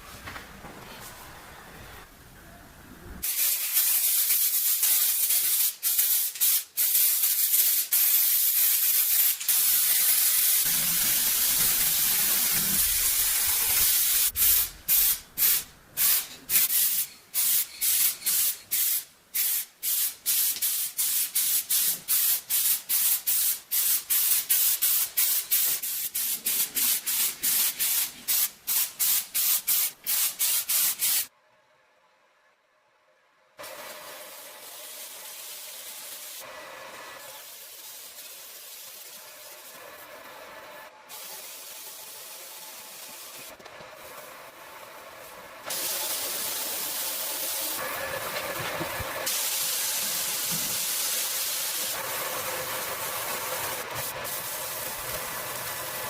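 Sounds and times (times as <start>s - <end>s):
spray paint hissing: 3.2s - 31.3s, 33.6s - 36.5s, 41.1s - 43.6s, 45.6s - 56.0s.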